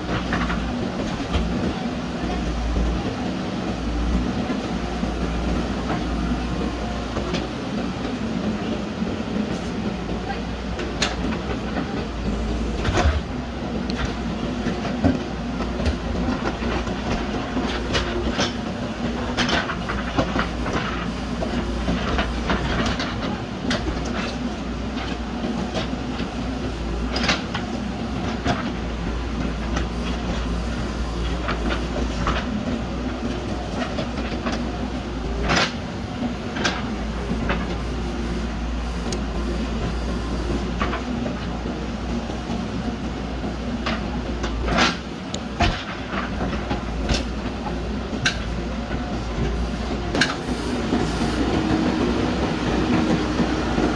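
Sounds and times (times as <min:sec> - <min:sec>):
diesel engine running: 0:46.5 - 0:53.9.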